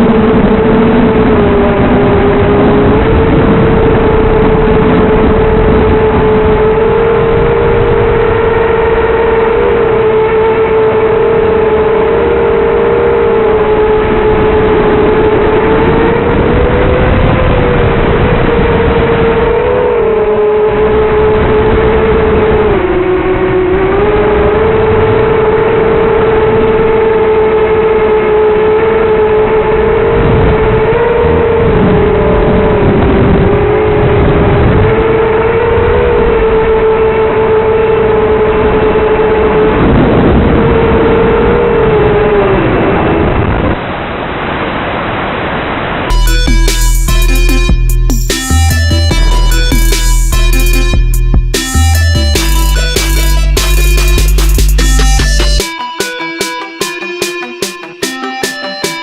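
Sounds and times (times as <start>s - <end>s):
quadcopter motors whining: 0.0s - 43.3s.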